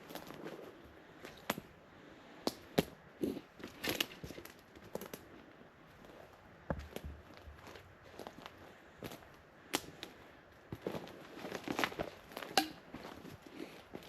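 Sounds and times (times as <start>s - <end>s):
footsteps on forest floor: 10.7s - 14.0s.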